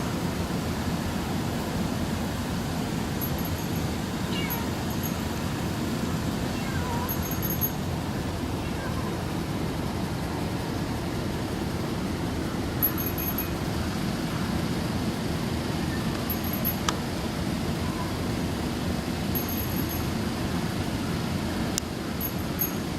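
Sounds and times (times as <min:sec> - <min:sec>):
low background rumble: 0:00.0 - 0:22.9.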